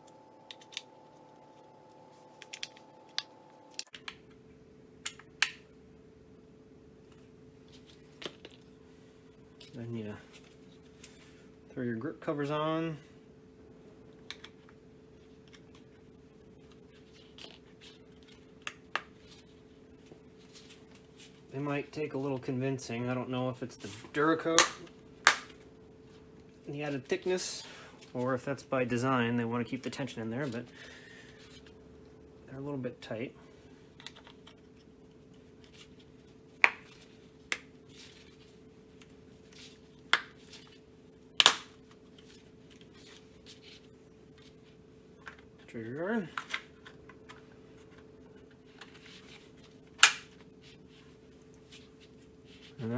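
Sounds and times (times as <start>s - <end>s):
faint hum: 0.0s - 52.9s
plastic covers snapping into place: 24.6s - 25.6s, 41.4s - 41.8s.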